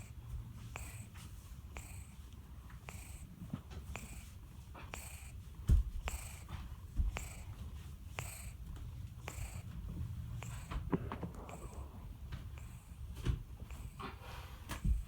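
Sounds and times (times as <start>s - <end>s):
cat snoring with whistle: 0.7s - 1.1s, 1.8s - 2.2s, 2.9s - 3.3s, 3.9s - 4.3s, 4.9s - 5.4s, 6.0s - 6.5s, 7.1s - 14.1s
low thumps: 9.3s - 14.0s.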